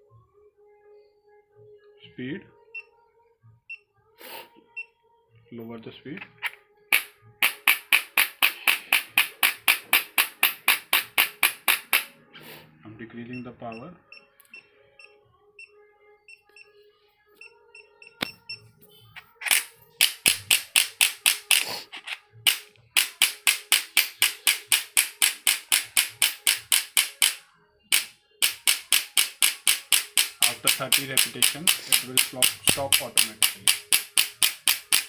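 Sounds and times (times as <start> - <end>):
adjusting gun rapid clicks: 6.2 - 12.1, 19.4 - 35.0.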